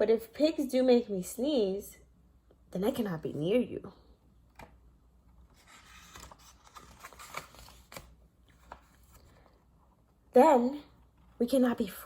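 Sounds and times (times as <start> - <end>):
page turning clicks: 4.5 - 4.8, 5.6 - 9.4
paper pages rustling: 4.5 - 9.8.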